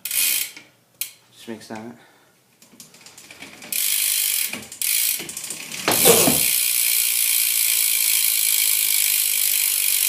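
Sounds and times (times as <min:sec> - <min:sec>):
bike hub ratchet ticking: 0:00.0 - 0:01.2, 0:03.7 - 0:05.6, 0:06.5 - 0:10.0.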